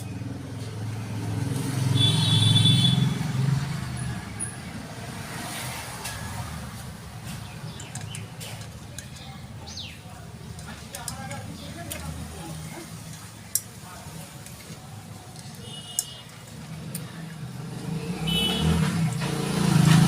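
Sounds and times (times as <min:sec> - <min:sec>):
vehicle passing by: 0:00.0 - 0:08.8, 0:16.6 - 0:20.0.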